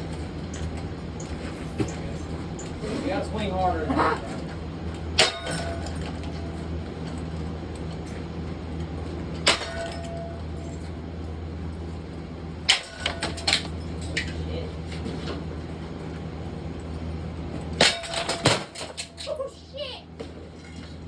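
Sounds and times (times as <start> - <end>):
ceiling fan being struck: 5.1 - 7.2, 9.4 - 10.8.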